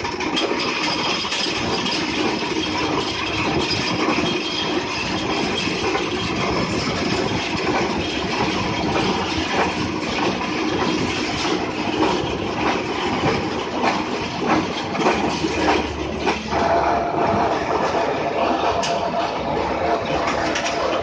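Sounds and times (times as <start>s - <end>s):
machine mechanical rattle: 0.0s - 21.0s
steady hum: 15.4s - 21.0s.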